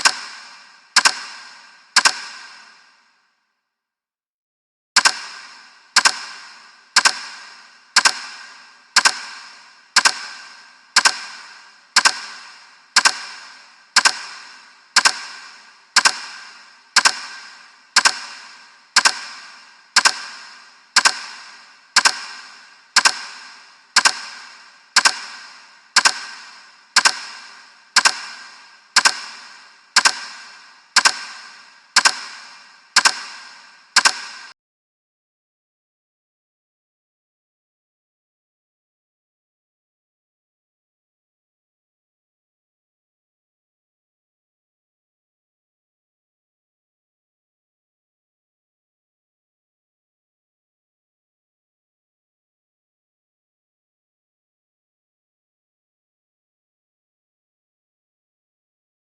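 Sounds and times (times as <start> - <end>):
timer ticking: 0.0 - 3.2, 5.0 - 34.6.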